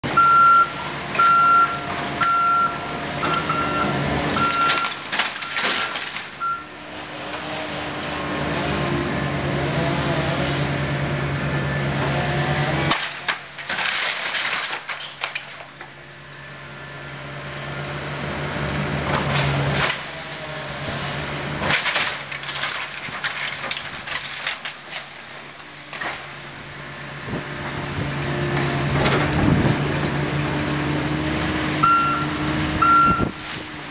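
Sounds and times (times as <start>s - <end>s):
diesel engine running: 0.0s - 33.9s
reversing alarm beeping: 0.2s - 5.8s, 6.4s - 6.8s, 31.8s - 33.4s
debris crashing and clattering: 3.3s - 6.4s, 12.8s - 16.0s, 21.5s - 26.4s.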